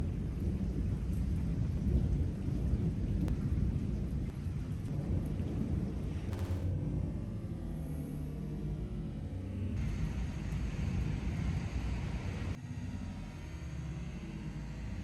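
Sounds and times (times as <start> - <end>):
thunder rumbling: 6.3 - 7.2.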